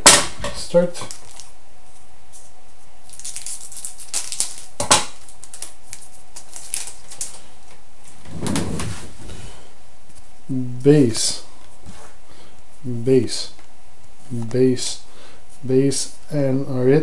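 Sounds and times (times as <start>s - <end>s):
foil wrapper tearing and crinkling: 1.1s - 1.5s, 3.0s - 7.4s.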